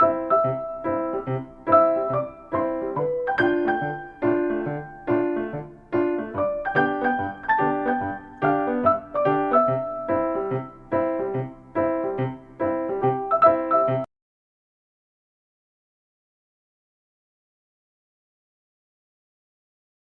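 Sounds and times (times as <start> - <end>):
piano chords: 0.0 - 14.1.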